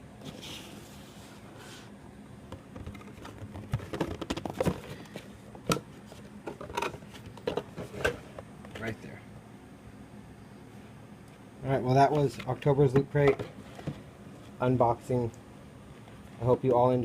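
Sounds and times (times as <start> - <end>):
items knocking on a tabletop: 2.5 - 4.8.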